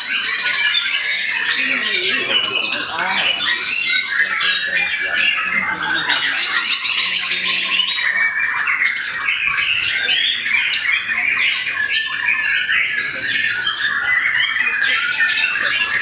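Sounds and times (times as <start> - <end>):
songbirds singing in chorus: 0.0 - 16.0.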